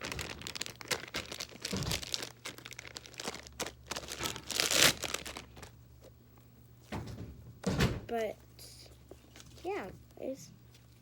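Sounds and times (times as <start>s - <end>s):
slime crackling and popping: 0.0s - 5.7s.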